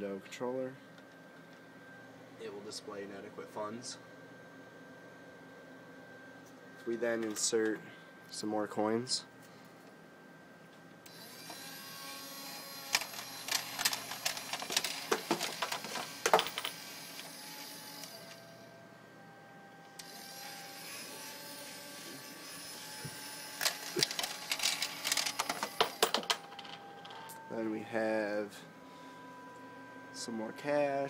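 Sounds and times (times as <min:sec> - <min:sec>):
faint steady hum: 0:00.0 - 0:31.0
coins clattering down a track: 0:12.9 - 0:16.9, 0:23.6 - 0:27.3.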